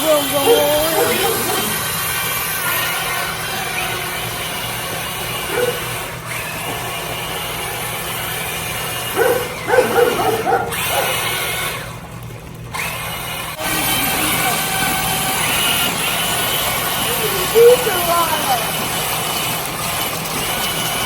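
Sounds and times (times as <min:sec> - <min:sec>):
electric motor whining: 0:00.0 - 0:21.0.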